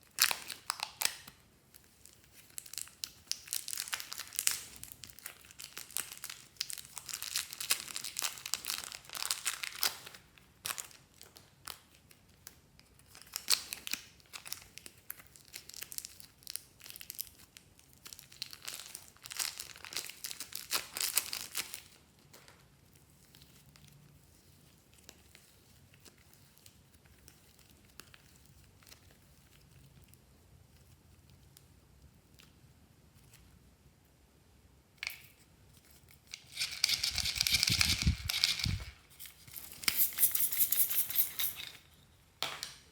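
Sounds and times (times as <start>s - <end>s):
slime crinkling and crackling: 0.0s - 33.4s.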